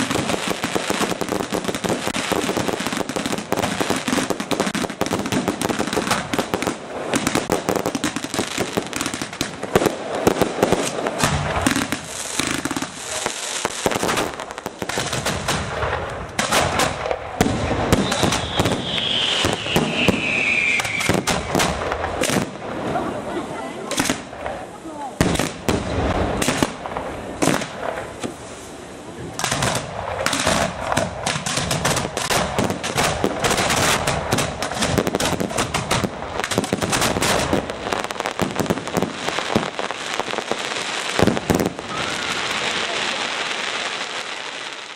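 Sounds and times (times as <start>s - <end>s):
fireworks bangs and crackling: 0.0s - 44.9s
falling firework whistle: 17.8s - 22.3s, 41.2s - 43.0s.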